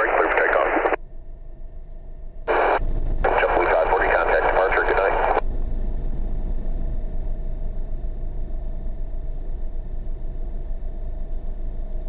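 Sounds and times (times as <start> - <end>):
faint steady hum: 0.0 - 12.0
wind buffeting microphone: 2.8 - 3.4, 5.4 - 12.0.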